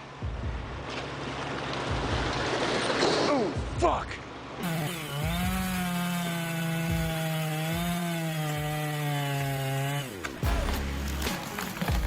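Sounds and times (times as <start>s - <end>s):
chainsaw engine revving: 4.6s - 12.0s.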